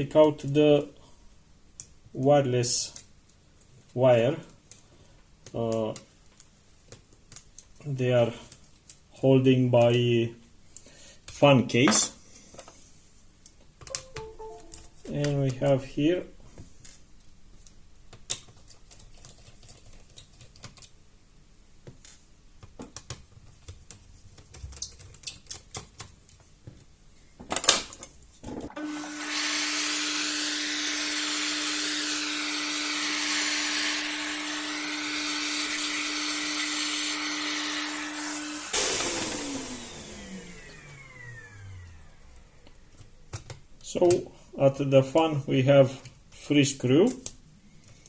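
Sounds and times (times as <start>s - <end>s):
electric motor tool whining: 28.7s - 42.5s.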